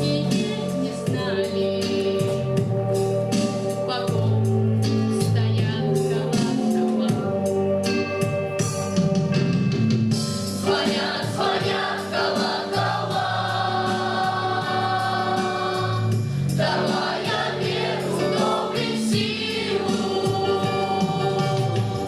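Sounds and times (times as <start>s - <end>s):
instrumental accompaniment with beat: 0.0s - 22.0s
choir singing in unison: 10.6s - 22.0s.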